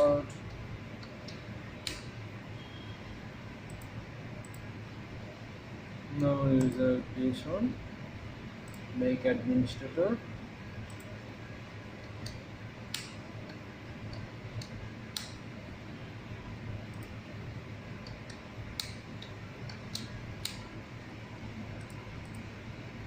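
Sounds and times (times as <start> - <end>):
sharp computer clicks: 0.0 - 2.2, 3.7 - 4.7, 10.8 - 11.1, 12.0 - 15.4
low computer and room hum: 0.0 - 23.0.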